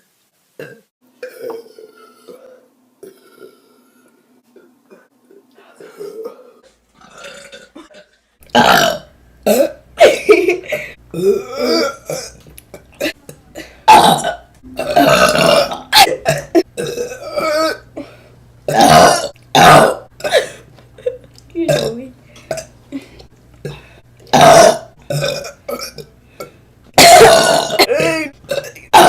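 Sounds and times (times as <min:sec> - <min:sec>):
women burping: 0:05.8 - 0:18.1, 0:18.7 - 0:29.0.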